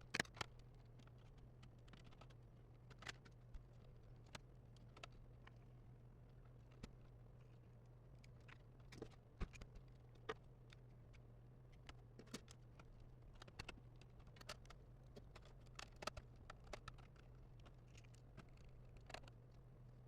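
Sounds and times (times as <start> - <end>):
faint steady low hum: 0.0 - 20.0
clicks and taps of laptop parts: 13.4 - 19.4.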